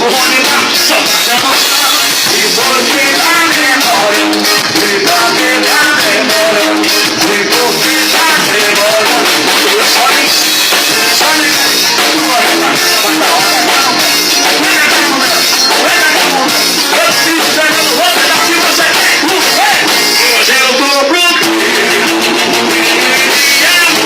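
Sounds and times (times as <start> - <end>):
band playing dance music: 0.0 - 24.0
drum kit beat: 0.0 - 24.0.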